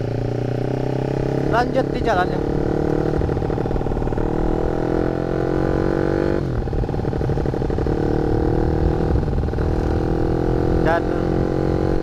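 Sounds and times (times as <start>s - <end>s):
motorcycle engine revving: 0.0s - 12.0s.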